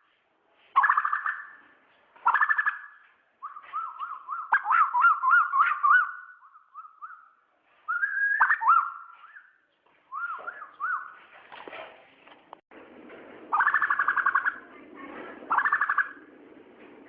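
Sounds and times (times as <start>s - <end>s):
koel calling: 2.2s - 11.2s, 15.5s - 16.2s.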